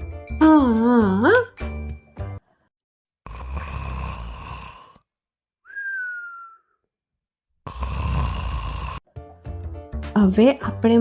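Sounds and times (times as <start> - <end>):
cartoon raspy snore: 3.2 - 5.1, 7.6 - 9.1
whistled breath sliding down: 5.6 - 6.8.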